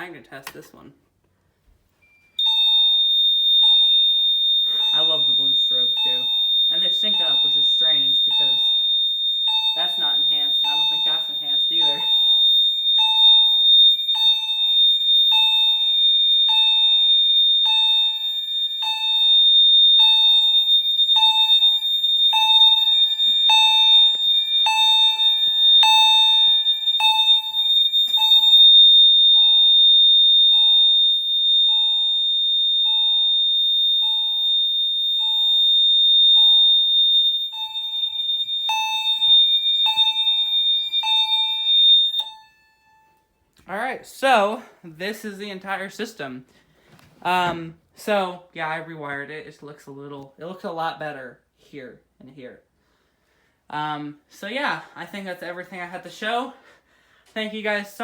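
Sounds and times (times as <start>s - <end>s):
continuous high-pitched alarm tone: 2.0s - 43.4s
pulsing lower alarm tone: 2.4s - 43.2s.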